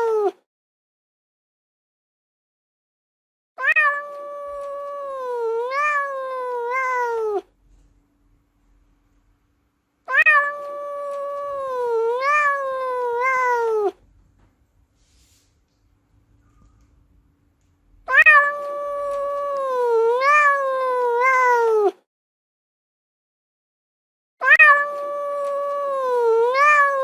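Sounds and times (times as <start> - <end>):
cat meowing: 0.0 - 0.4, 3.6 - 7.5, 10.0 - 14.1, 18.0 - 22.0, 24.4 - 27.0.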